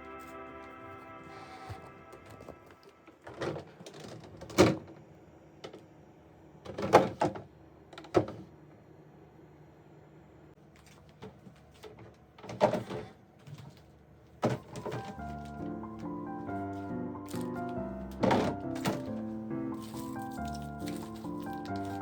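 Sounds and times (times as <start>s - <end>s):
household knocks and clunks: 17.3s - 22.0s.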